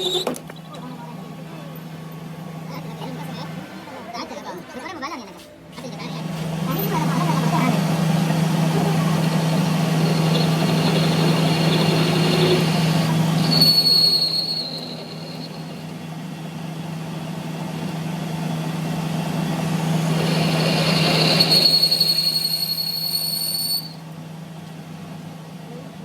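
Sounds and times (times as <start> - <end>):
high-pitched squeal: 0.0 - 0.6, 8.5 - 16.0, 20.0 - 24.0
workshop machinery humming: 0.0 - 26.0.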